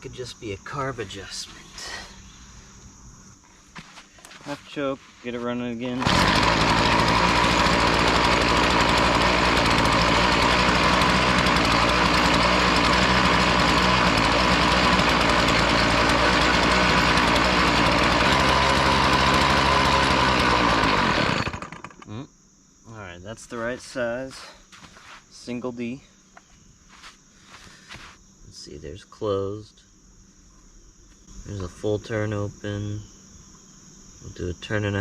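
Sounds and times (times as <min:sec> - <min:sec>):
small gasoline engine running: 0:05.9 - 0:22.1.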